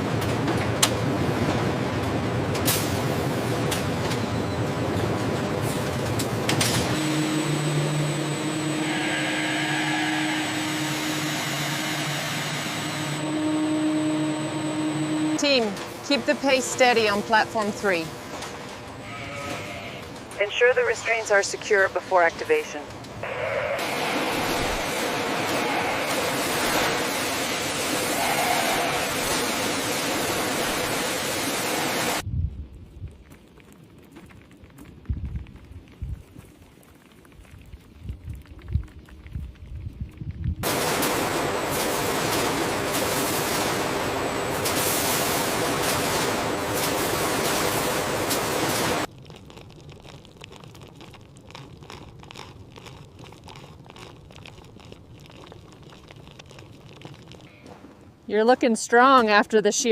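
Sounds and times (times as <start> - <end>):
crunching and rustling: 44.7 - 58.1.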